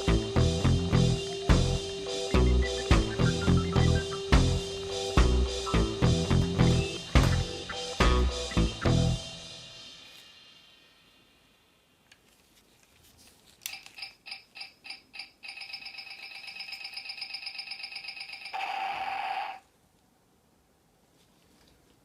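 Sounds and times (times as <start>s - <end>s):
steady electronic tone: 0.0s - 9.6s.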